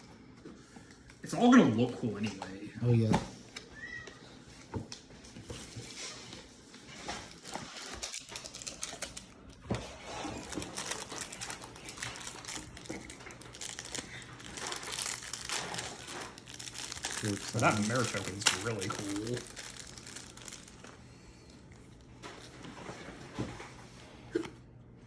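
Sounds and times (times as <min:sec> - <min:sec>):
foil wrapper crinkling: 0:06.9 - 0:21.0
cards being handled: 0:10.4 - 0:20.9.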